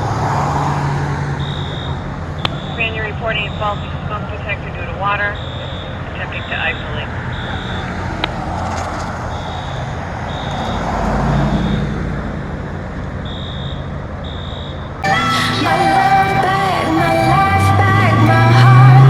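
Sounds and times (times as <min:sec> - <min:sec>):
fire alarm horn beeping: 0:01.4 - 0:08.0, 0:09.3 - 0:10.9, 0:13.2 - 0:17.6
fire truck engines idling: 0:01.4 - 0:10.8, 0:12.2 - 0:19.0
music: 0:15.0 - 0:19.0.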